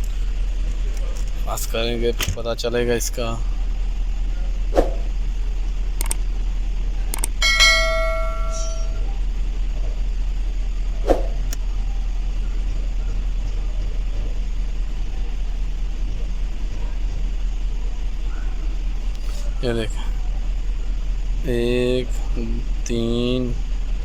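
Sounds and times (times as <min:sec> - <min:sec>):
engine idling: 0:00.0 - 0:24.0
sharp clicks: 0:06.0 - 0:06.2, 0:07.1 - 0:07.7
short electronic chime: 0:07.4 - 0:09.0.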